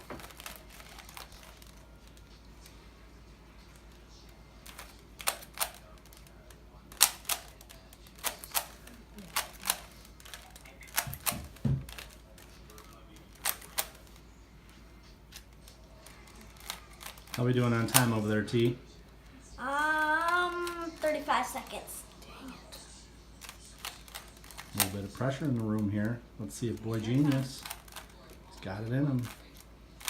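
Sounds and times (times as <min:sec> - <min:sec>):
puzzle cube plastic clicking: 0:04.6 - 0:06.3, 0:06.9 - 0:14.2.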